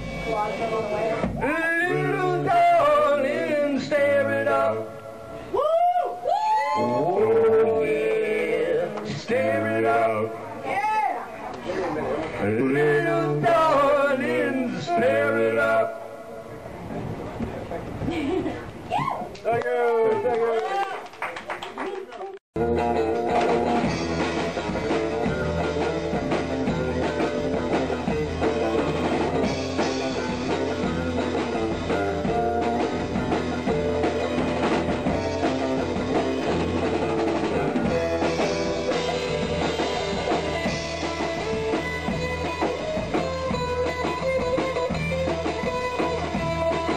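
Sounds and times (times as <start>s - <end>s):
drum kit beat: 0.0s - 4.8s, 12.4s - 15.4s, 22.6s - 46.9s
guitars: 0.0s - 5.6s, 6.7s - 19.0s, 22.6s - 46.9s.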